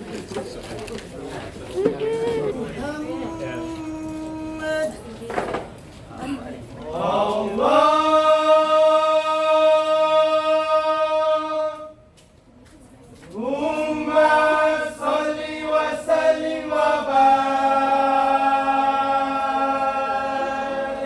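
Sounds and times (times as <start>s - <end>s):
voices singing slow chant: 6.9s - 12.1s, 13.4s - 21.0s.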